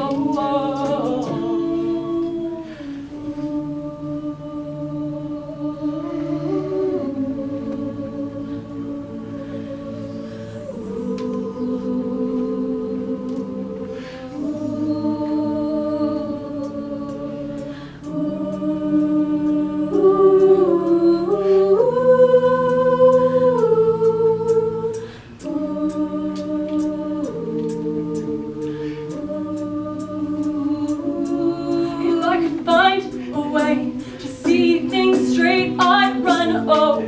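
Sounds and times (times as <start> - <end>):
a cappella group singing chords: 0.0 - 37.0
light ticking beat: 14.4 - 37.0.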